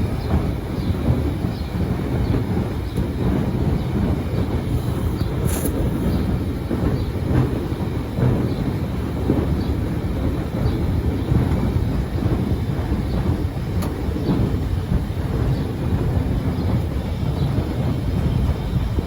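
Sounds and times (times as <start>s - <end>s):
truck engine rumbling: 2.0s - 8.4s.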